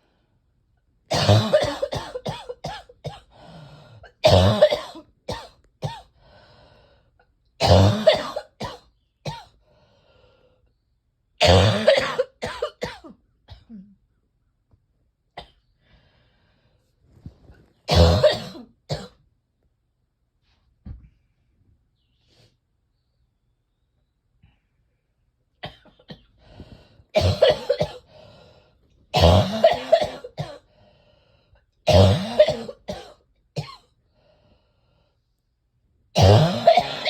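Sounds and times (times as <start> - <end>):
person coughing: 1.1 - 3.3, 4.1 - 6.1, 7.6 - 9.5, 11.4 - 14.0, 17.9 - 19.2, 27.2 - 28.1, 29.2 - 30.7, 31.9 - 33.8, 36.2 - 37.0.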